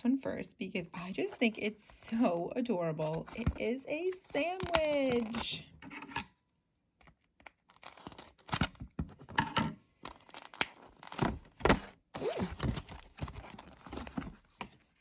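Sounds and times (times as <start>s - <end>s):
plastic wrapping crinkling: 3.0s - 5.5s.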